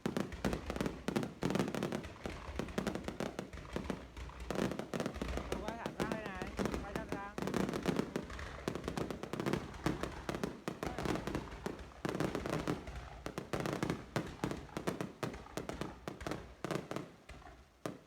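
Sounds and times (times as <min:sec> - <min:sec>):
fireworks bangs and crackles: 0:00.0 - 0:18.0.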